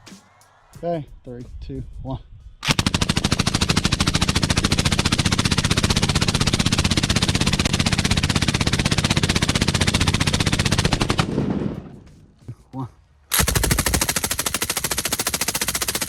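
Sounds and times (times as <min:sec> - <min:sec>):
suppressed machine gun firing: 0:02.6 - 0:12.1, 0:13.3 - 0:16.0.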